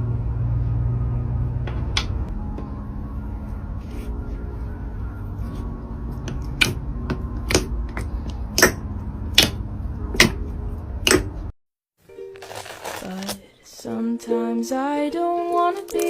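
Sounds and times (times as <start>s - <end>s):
slime squeezed rustling: 12.4s - 13.4s.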